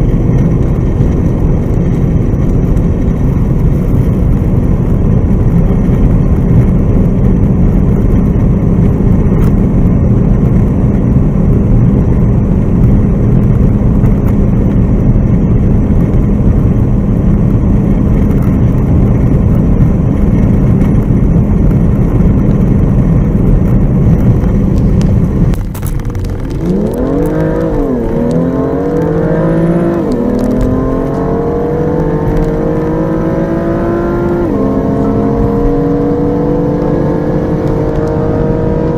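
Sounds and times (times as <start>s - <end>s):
car accelerating hard: 0.0s - 38.9s
engine wind and tyre drone: 0.0s - 38.9s.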